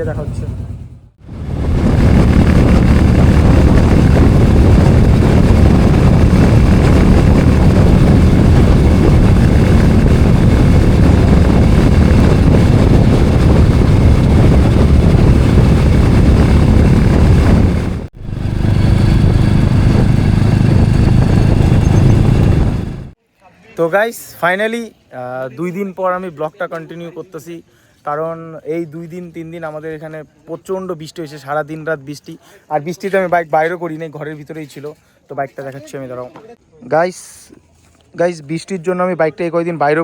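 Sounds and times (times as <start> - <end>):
motorcycle engine running: 0.0 - 23.2
dense rushing noise: 1.2 - 23.2.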